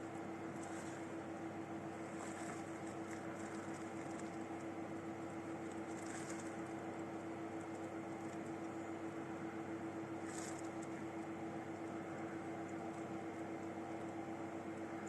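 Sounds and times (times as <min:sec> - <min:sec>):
steady hum: 0:00.0 - 0:15.0
faint rustle: 0:10.2 - 0:11.0.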